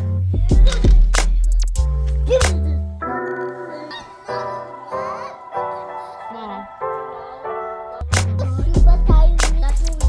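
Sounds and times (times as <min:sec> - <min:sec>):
music with deep bass and drums: 0:00.0 - 0:02.9, 0:08.1 - 0:10.0.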